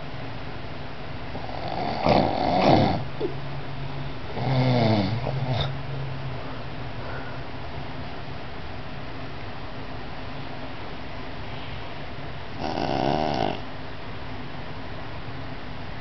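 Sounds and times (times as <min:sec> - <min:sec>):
child snoring loudly: 0:01.4 - 0:03.0, 0:04.3 - 0:05.7, 0:12.6 - 0:13.6.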